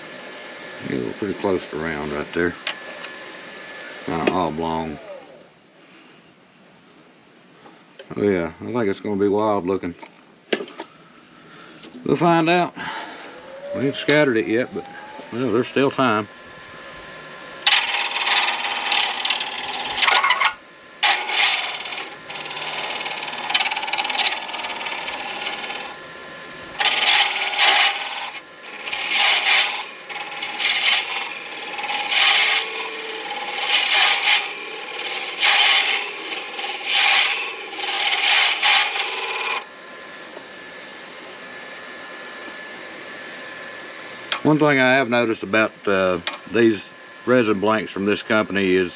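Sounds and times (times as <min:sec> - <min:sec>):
lathe running: 0:00.0 - 0:05.4, 0:11.8 - 0:48.9
turning tool scraping acrylic: 0:17.7 - 0:20.3, 0:21.0 - 0:25.9, 0:26.8 - 0:39.6.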